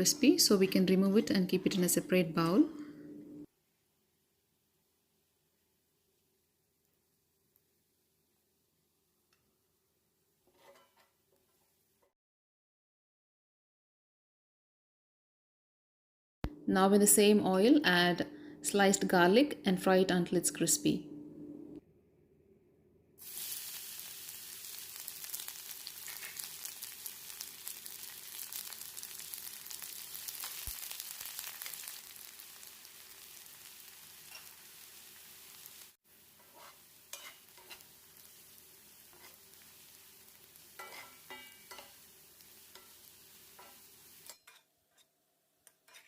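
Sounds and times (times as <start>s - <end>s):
spatula scraping a pan: 10.4s - 11.6s, 34.2s - 34.8s, 36.2s - 39.6s, 40.6s - 45.1s, 45.8s - 46.0s
garlic sizzling in oil: 23.2s - 44.6s.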